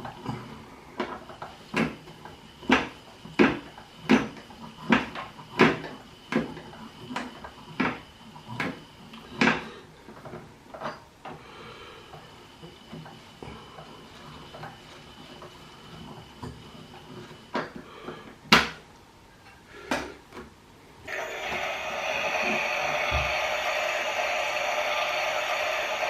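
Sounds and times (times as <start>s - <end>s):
faint high whine: 21.0s - 26.0s.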